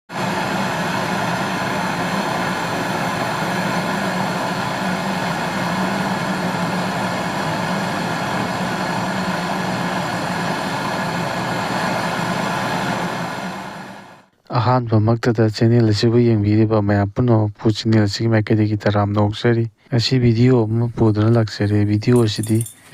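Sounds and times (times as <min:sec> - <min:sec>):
machine drone and rushing noise: 0:00.1 - 0:14.2.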